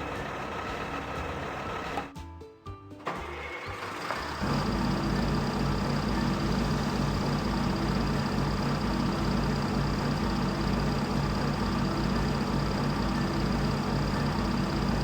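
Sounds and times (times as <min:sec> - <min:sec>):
motor humming with whine: 0:03.8 - 0:15.0.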